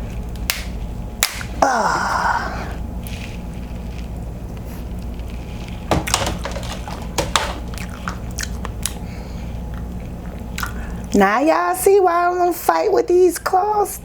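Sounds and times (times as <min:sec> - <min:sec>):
steady low hum: 0:00.0 - 0:14.0
crab shell crunching and clicking: 0:06.1 - 0:09.0.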